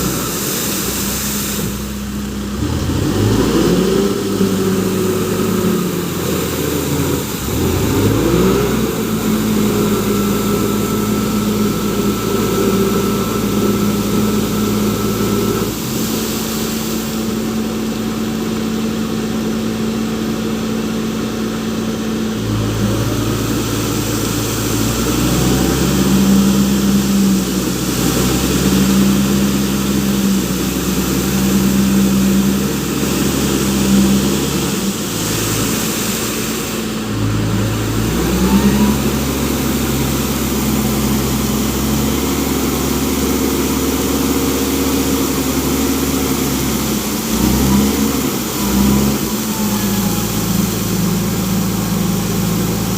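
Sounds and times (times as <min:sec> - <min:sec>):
diesel engine revving: 0:00.0 - 0:52.9.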